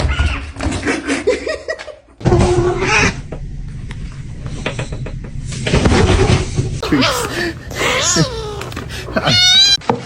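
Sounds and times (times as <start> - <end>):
person laughing: 6.8 - 9.8
voice sounds: 6.8 - 9.8.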